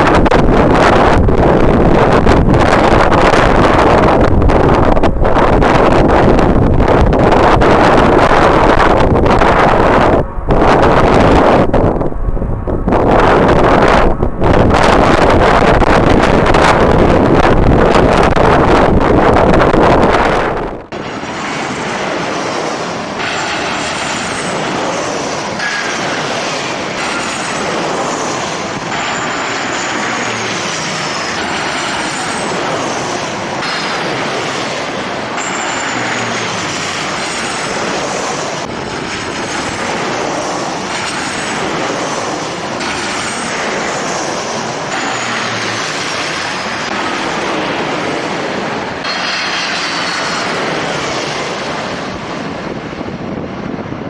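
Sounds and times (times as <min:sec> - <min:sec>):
jet engines running: 0:00.0 - 0:54.0.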